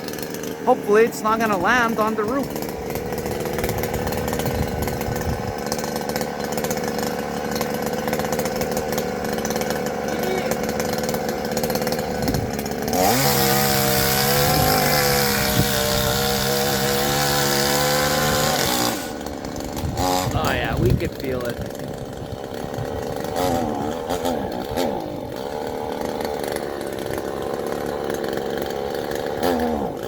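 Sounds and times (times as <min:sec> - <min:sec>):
chainsaw running and revving: 0:00.0 - 0:30.0.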